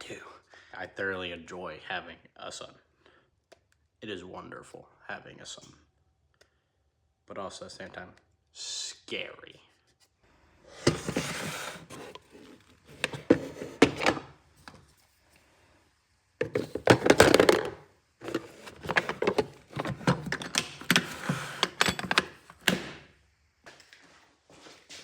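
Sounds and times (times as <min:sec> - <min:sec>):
tools knocking and clattering: 0:11.9 - 0:14.2, 0:16.4 - 0:23.0.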